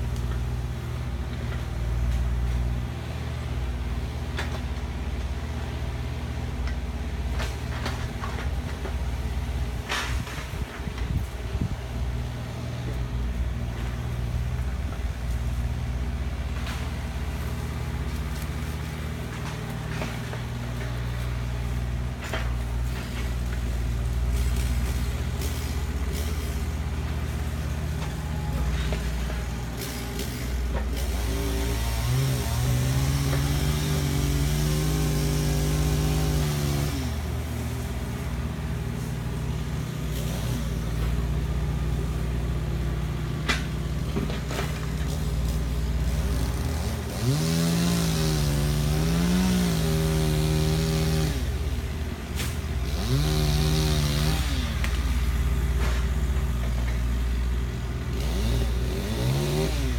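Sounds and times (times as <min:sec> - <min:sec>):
diesel engines running: 0:00.0 - 0:59.9.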